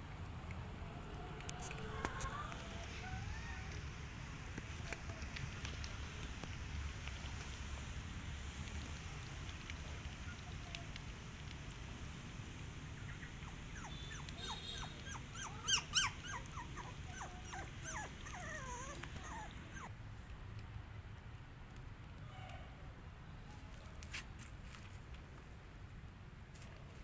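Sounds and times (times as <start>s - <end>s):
low steady background hum: 0.0s - 27.0s
puppies whimpering: 1.5s - 3.8s, 13.1s - 19.9s
puppy yelps: 13.1s - 19.9s.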